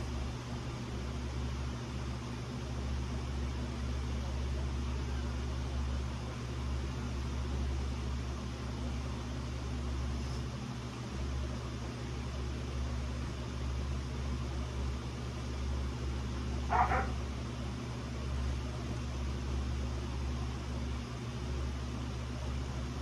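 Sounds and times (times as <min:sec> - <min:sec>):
steady low hum: 0:00.0 - 0:23.0
puppy yip: 0:16.7 - 0:17.2.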